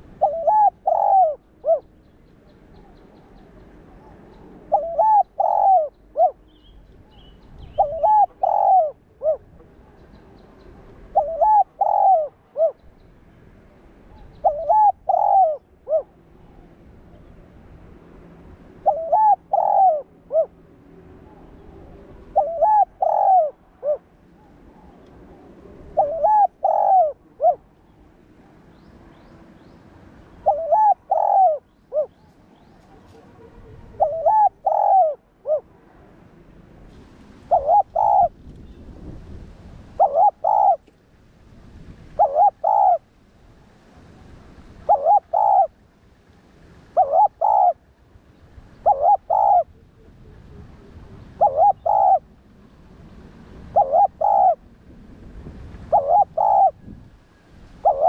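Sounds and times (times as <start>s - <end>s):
dove cooing: 0.0s - 1.9s, 2.8s - 6.4s, 7.0s - 12.8s, 14.1s - 17.3s, 18.8s - 20.6s, 21.2s - 27.7s, 30.4s - 35.7s, 37.4s - 38.4s, 40.0s - 40.9s, 42.2s - 43.0s, 44.8s - 45.8s, 46.9s - 47.8s, 48.8s - 52.3s, 53.7s - 54.7s, 55.9s - 56.8s, 57.8s - 58.0s.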